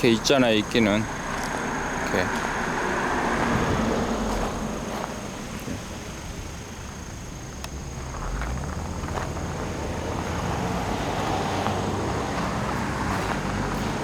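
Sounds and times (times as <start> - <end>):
distant engine rumble: 0.0 - 14.0.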